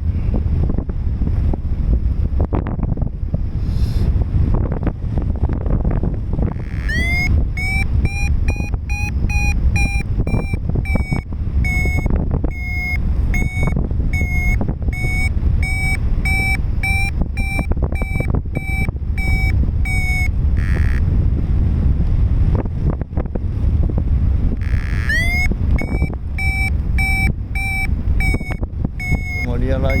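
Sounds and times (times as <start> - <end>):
wind buffeting microphone: 0.0 - 30.0
short electronic beeps: 6.5 - 21.0, 24.6 - 30.0.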